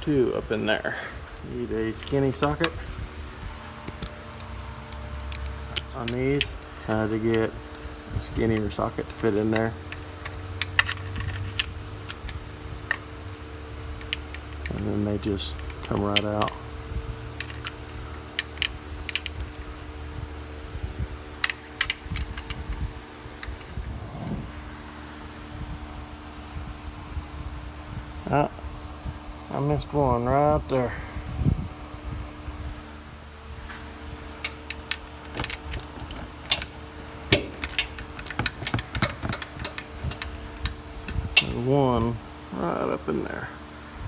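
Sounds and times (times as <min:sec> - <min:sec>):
low hum: 0:31.0 - 0:44.0
metallic clicks of hand tools: 0:34.4 - 0:42.1
socket wrench and bolts clinking: 0:34.4 - 0:42.2.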